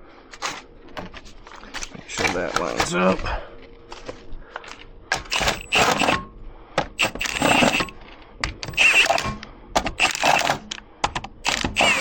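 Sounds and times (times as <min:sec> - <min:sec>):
impact wrench bursts: 0:05.1 - 0:06.2, 0:07.0 - 0:07.9, 0:08.6 - 0:10.8, 0:11.4 - 0:12.0.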